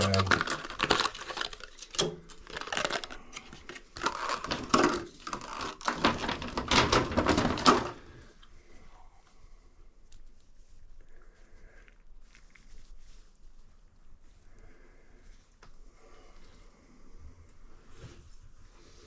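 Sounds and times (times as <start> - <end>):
plastic packaging crinkling: 0.0 - 8.1.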